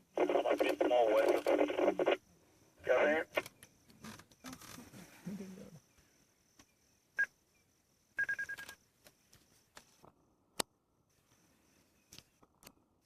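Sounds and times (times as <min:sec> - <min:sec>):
sharp clicks: 0:00.2 - 0:02.1.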